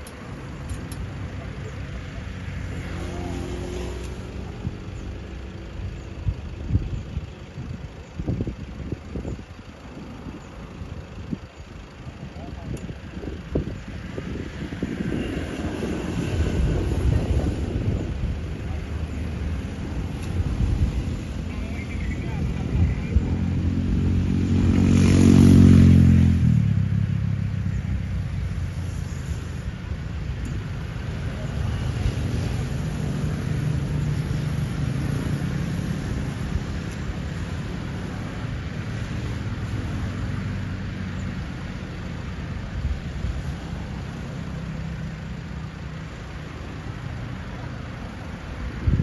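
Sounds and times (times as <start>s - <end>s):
low engine rumble: 0.0s - 49.0s
motorcycle passing close: 1.3s - 5.1s, 11.4s - 41.8s.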